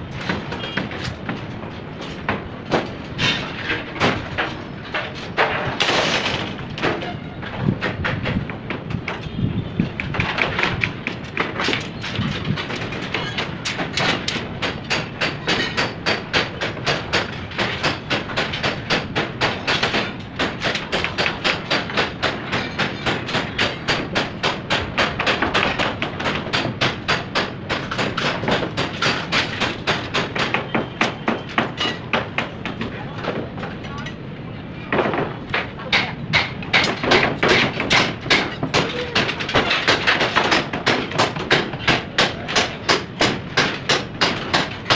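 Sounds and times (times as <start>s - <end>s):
sharp rhythmic knocks: 10.0s - 33.4s, 35.0s - 44.9s.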